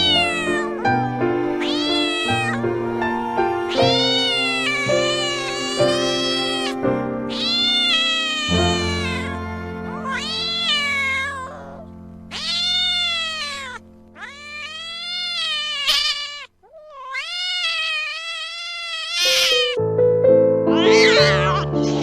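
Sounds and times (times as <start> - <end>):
background music: 0.0 - 14.2, 19.5 - 22.0
cat meowing: 0.0 - 19.8, 20.7 - 22.0.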